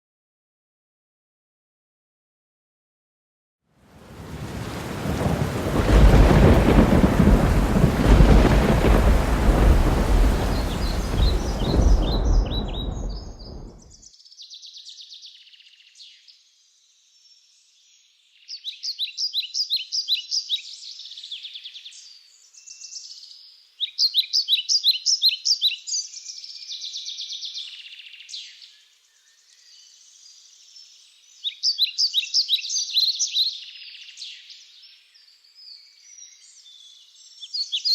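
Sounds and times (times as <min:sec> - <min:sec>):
heavy rain: 0:03.9 - 0:13.9
rumbling thunder: 0:04.1 - 0:14.0
birds chirping trills: 0:06.1 - 0:14.0.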